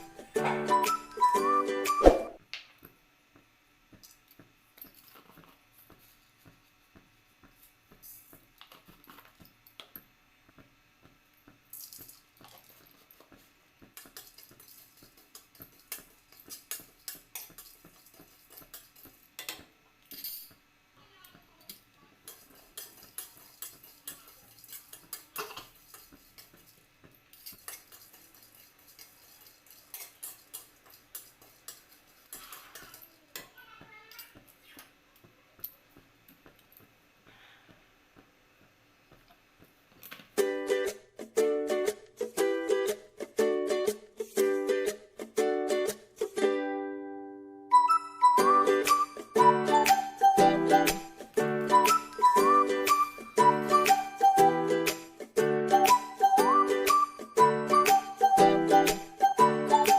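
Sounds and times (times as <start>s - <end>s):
utensils clinking and tapping: 11.7s - 20.6s, 21.6s - 34.5s.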